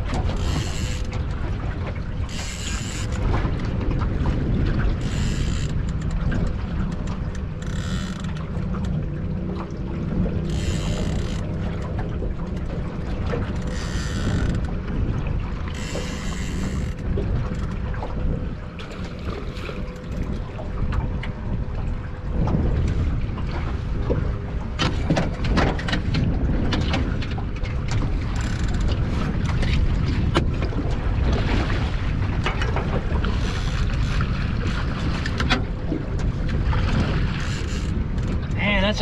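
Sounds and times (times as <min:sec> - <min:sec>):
wind buffeting microphone: 0:00.0 - 0:39.0
sharp clicks and knocks: 0:05.0 - 0:09.0.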